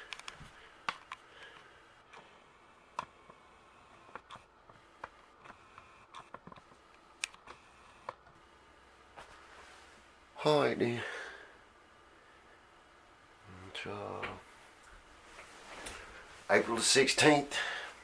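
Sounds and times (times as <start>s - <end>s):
camera handling clicks and taps: 0.1s - 1.2s.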